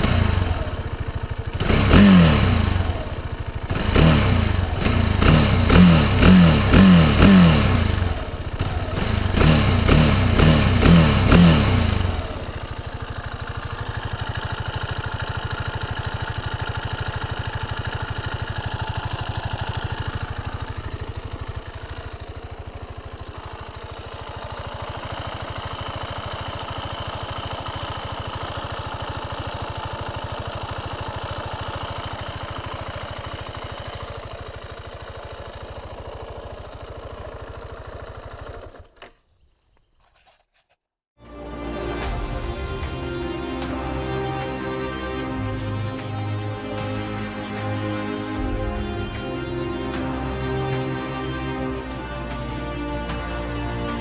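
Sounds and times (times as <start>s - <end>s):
motorcycle engine revving: 0.0s - 39.1s
motorcycle engine idling: 0.0s - 39.9s.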